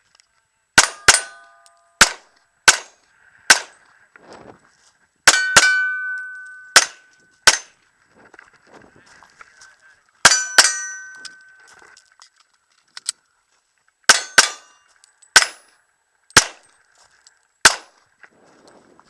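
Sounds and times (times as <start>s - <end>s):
steel targets ringing: 0.8s - 2.2s, 5.3s - 7.7s, 10.2s - 11.7s, 14.1s - 15.8s
handgun shots: 5.3s - 7.7s, 16.4s - 16.6s, 17.6s - 17.9s.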